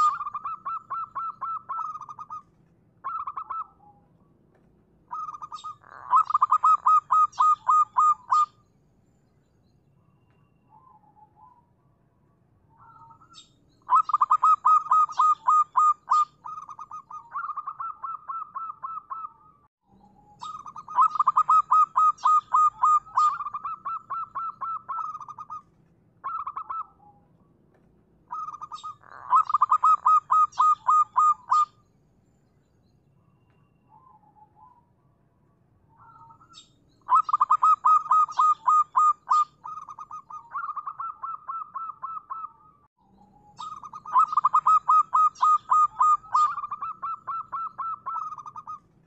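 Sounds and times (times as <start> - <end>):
dove cooing in bubbling notes: 0.0 - 3.8, 5.1 - 8.6, 12.8 - 19.5, 20.4 - 27.0, 28.3 - 31.8, 37.1 - 48.9.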